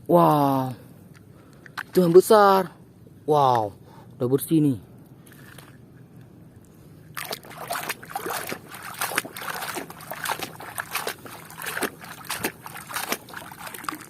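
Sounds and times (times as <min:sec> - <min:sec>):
water sloshing and splashing in a basin: 0:07.1 - 0:14.0.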